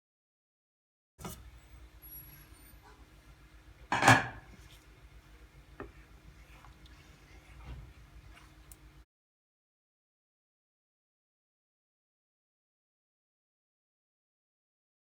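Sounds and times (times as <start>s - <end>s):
tableware clattering: 3.9s - 4.5s.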